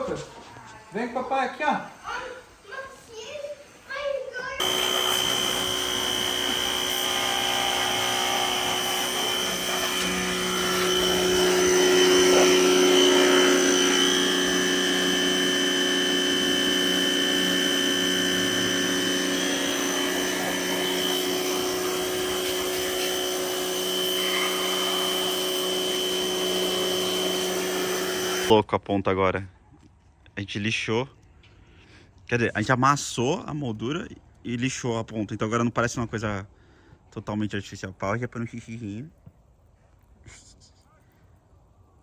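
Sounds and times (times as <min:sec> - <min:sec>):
power tool sanding metal: 0:04.6 - 0:28.5.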